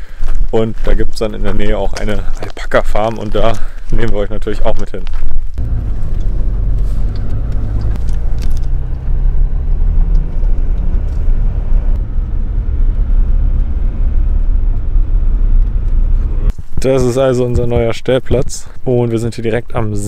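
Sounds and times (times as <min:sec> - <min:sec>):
vehicle engine and road rumble: 0:00.0 - 0:20.0.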